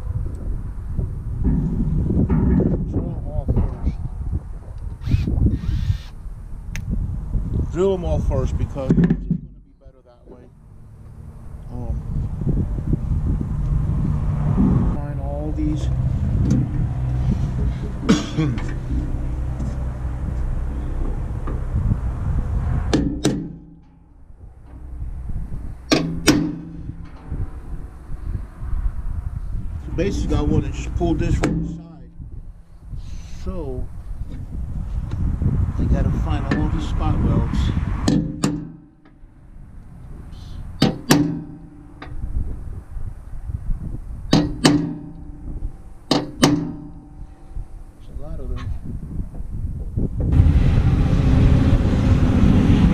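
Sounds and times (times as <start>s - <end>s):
metal panel ringing: 1.1s - 4.2s, 8.2s - 13.6s, 14.6s - 33.0s, 38.0s - 39.8s, 40.6s - 49.5s
hammer tapping punch on sheet metal: 22.9s - 23.9s, 25.9s - 27.2s, 31.4s - 31.9s, 38.0s - 39.2s, 40.8s - 42.2s, 44.3s - 47.2s.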